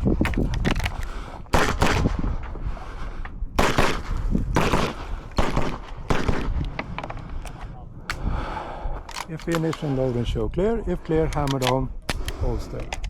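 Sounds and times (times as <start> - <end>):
pistol shots in quick pairs: 1.5 - 2.3, 3.6 - 6.7.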